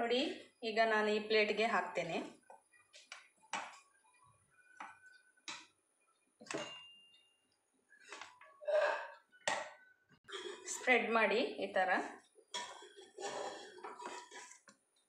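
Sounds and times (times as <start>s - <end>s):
faint metallic ring: 6.5s - 7.4s
metal spoon scraping a pan: 12.6s - 14.7s.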